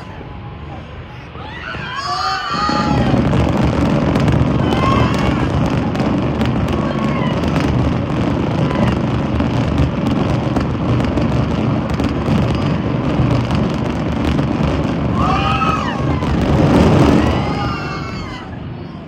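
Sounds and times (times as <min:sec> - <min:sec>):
voices: 0:00.0 - 0:03.3
fireworks booming and crackling: 0:00.0 - 0:19.0.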